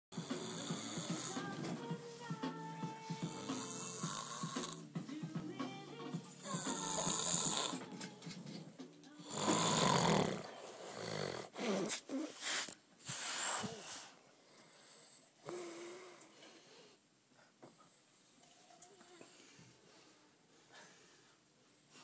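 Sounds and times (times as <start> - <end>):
man snoring: 0.1 - 1.5, 3.1 - 4.9, 6.4 - 7.9, 9.2 - 11.9.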